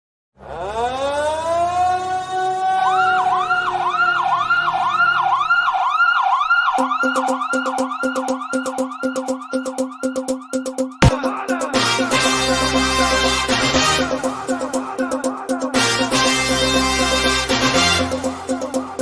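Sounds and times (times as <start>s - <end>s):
siren-like wailing and yelps: 0.4s - 10.8s
pulsing beat with bass: 6.8s - 19.0s.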